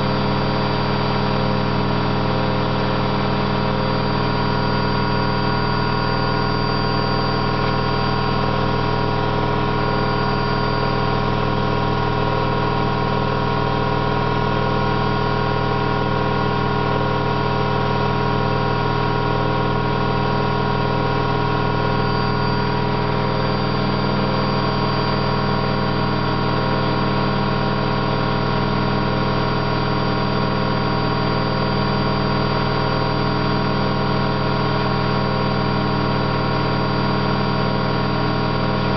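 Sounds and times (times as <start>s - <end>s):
washing machine spinning: 18.8s - 27.8s.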